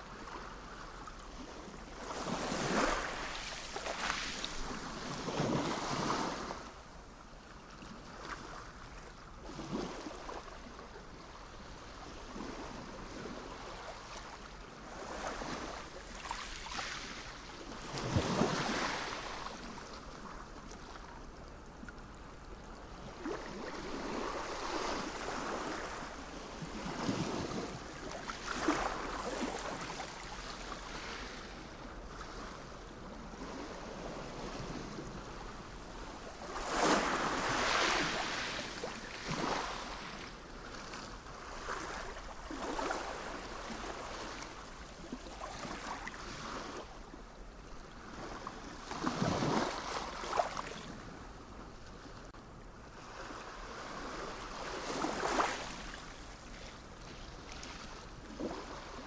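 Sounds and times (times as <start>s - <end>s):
sea waves washing in: 33.4s - 40.4s.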